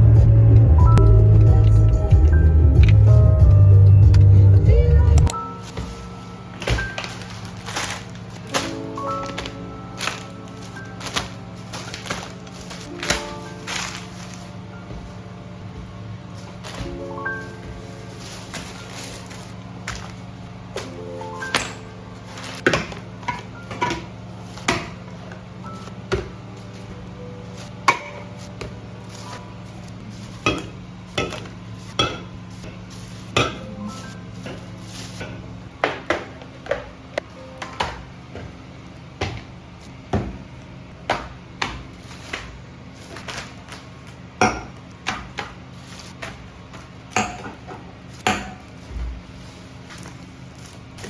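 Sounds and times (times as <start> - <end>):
dishes and utensils clinking: 30.2 - 36.8.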